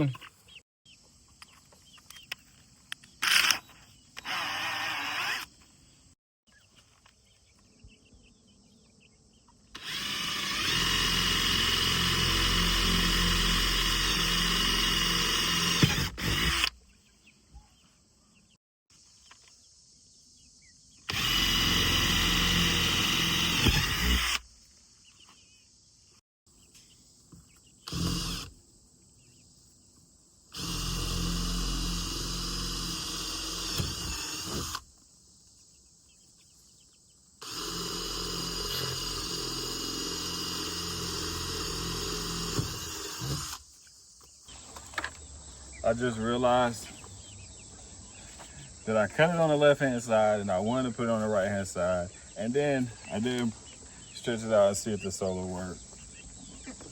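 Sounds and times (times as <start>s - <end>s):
power drill running: 3.2s - 3.6s, 4.2s - 5.5s, 9.8s - 16.8s, 21.1s - 24.4s, 27.8s - 28.5s, 30.5s - 34.8s, 37.4s - 43.6s.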